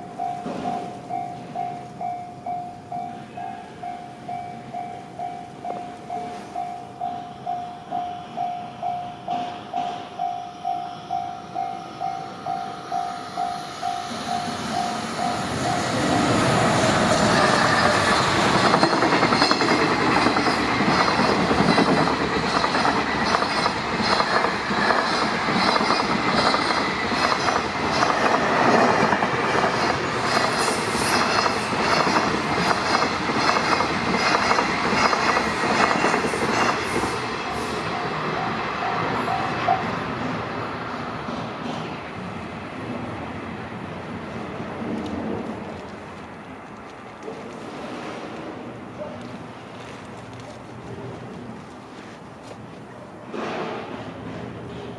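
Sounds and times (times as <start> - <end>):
level-crossing bell dinging: 0.0 - 16.2
train wheels clattering: 13.0 - 37.8.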